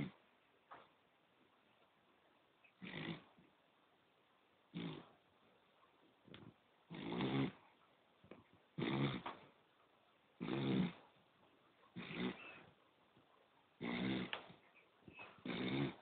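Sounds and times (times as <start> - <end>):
dog snoring: 2.8 - 3.4, 4.7 - 5.1, 6.9 - 7.6, 8.8 - 9.3, 10.4 - 11.1, 11.9 - 12.6, 13.8 - 14.5, 15.4 - 16.0.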